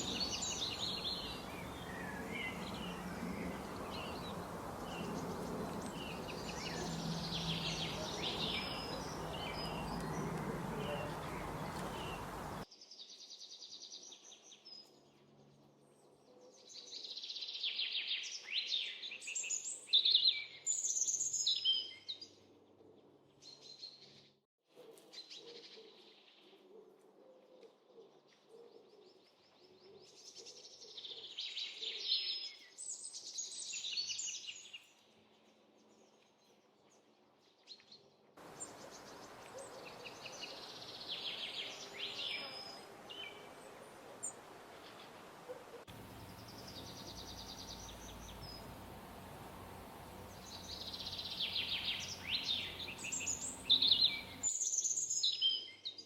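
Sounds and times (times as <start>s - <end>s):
background hiss: 0.0s - 12.6s, 38.4s - 54.5s
songbirds chirping and twittering: 0.0s - 24.4s, 27.8s - 56.0s.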